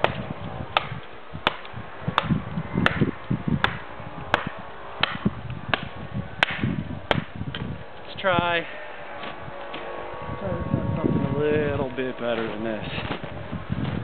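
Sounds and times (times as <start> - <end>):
knife chopping into wood: 0.8 - 7.3
dull thuds: 9.1 - 9.9, 12.3 - 14.0.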